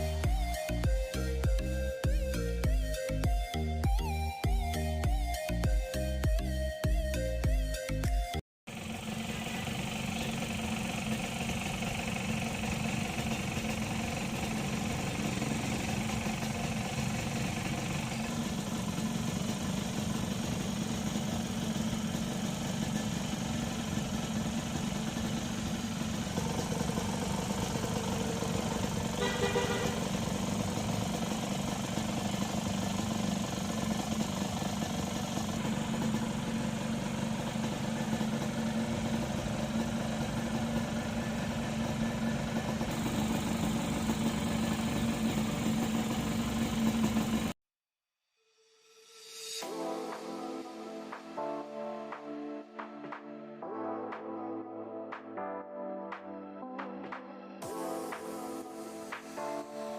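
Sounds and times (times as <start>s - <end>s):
motorcycle engine idling: 0.0s - 7.5s, 8.7s - 47.6s.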